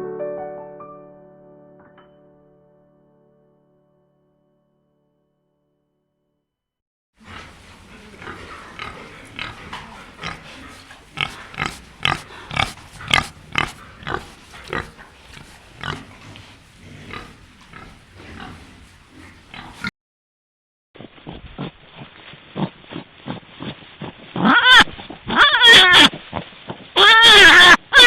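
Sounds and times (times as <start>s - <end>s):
pig grunting: 7.2s - 19.9s.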